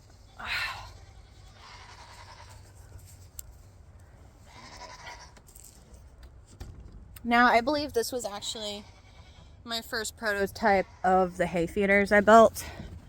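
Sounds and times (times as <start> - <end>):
goats bleating: 0.3 - 2.6, 4.5 - 5.4.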